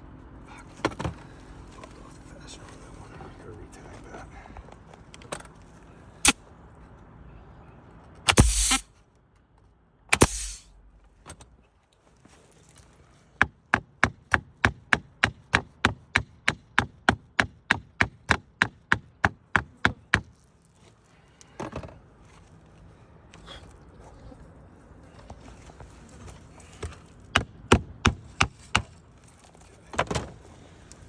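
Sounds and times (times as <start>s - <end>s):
hammer striking wood: 8.3s - 8.8s, 10.2s - 10.8s, 13.4s - 20.3s, 27.4s - 28.9s
sharp blasts of noise: 8.3s - 8.8s, 10.1s - 10.9s.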